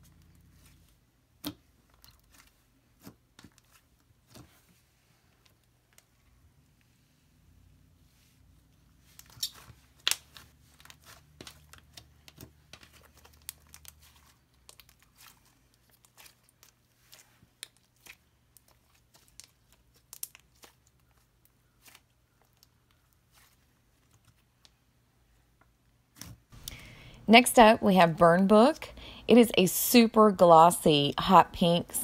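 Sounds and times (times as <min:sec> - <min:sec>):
slime clicking and crackling: 0:09.1 - 0:24.8.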